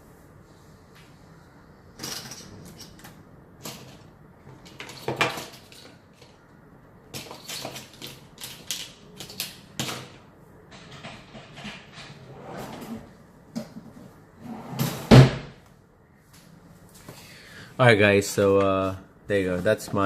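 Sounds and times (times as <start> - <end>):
objects clicking and knocking on desk: 7.1 - 12.2.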